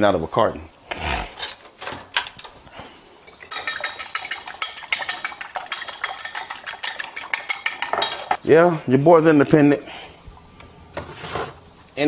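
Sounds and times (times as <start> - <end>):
whisk beating egg whites in dish: 3.3 - 8.4.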